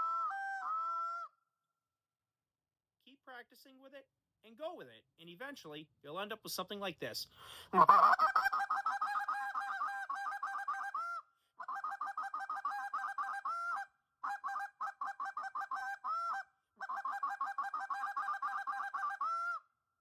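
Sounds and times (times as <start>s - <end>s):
goose call clucks and honks: 7.8s - 19.6s.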